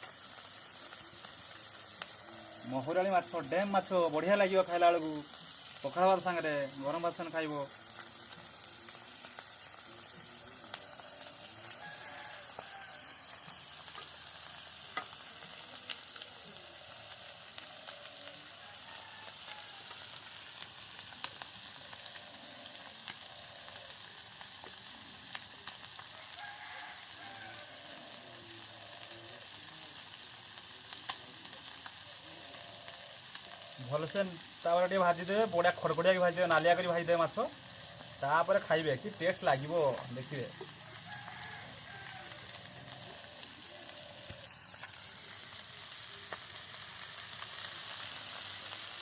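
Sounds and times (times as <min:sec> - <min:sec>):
fish frying in oil: 0:00.0 - 0:49.0.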